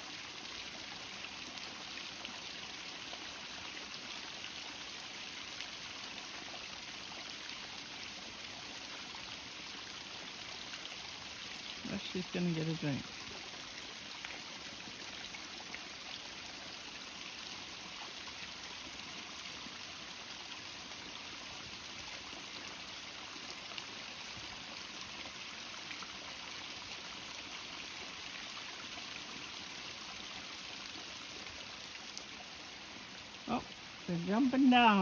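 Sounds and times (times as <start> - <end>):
running water splashing: 0.0 - 35.0.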